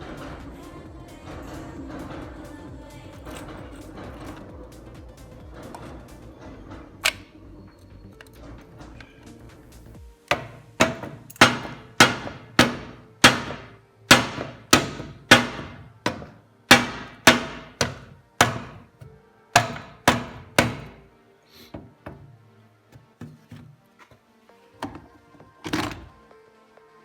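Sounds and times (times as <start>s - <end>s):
hammer blows ringing: 10.3s - 18.9s, 19.6s - 21.0s.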